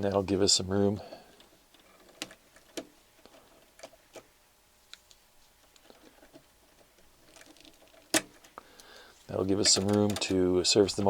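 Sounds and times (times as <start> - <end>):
wiring being handled: 1.2 - 11.0.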